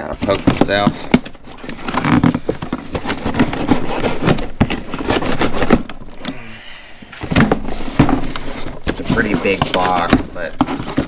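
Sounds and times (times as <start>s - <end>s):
knife cutting cardboard box: 0.0s - 6.3s, 7.2s - 11.0s
cardboard scraping and tearing: 0.0s - 6.4s, 7.1s - 11.0s.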